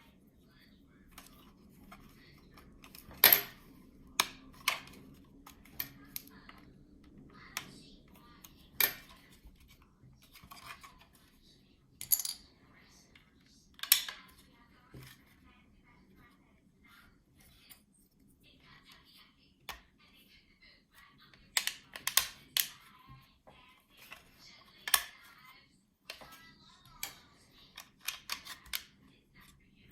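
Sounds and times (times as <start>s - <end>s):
plastic parts clicking and clacking: 13.8s - 15.2s, 21.5s - 22.8s, 24.0s - 25.2s, 26.1s - 29.0s.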